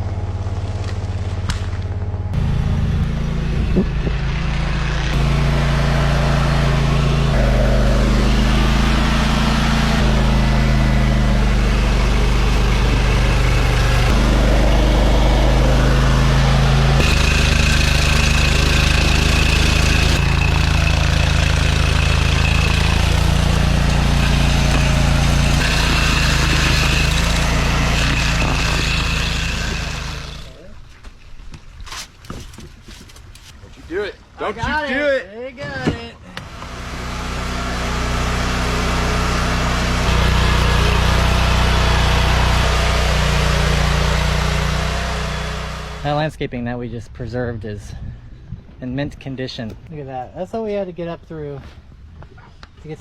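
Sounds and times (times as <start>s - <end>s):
heavy machinery droning: 0.0s - 30.6s, 36.3s - 46.1s.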